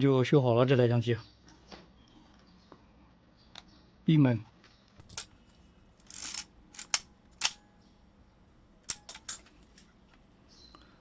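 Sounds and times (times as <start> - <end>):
shutter cocking rasp: 6.0 - 7.6.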